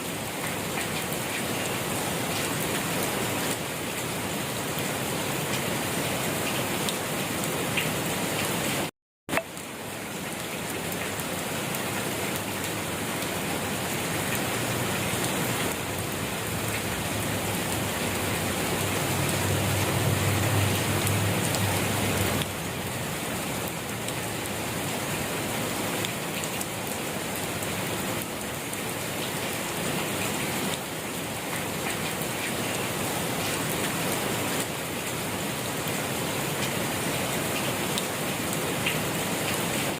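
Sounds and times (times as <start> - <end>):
gentle rain pattering: 0.0 - 39.9.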